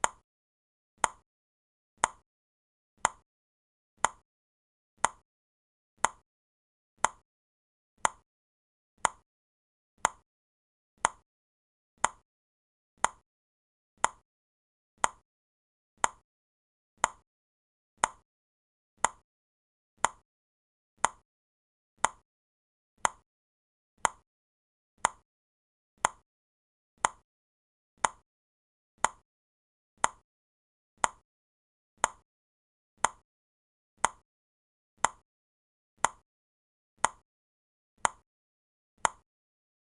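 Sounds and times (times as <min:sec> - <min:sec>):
timer clock ticking: 0:31.0 - 0:31.2.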